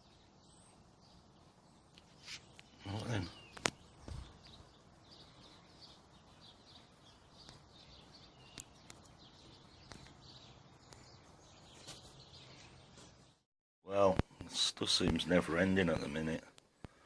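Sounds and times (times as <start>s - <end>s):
faint birds chirping: 0.0s - 17.0s
small clicks: 8.5s - 9.2s.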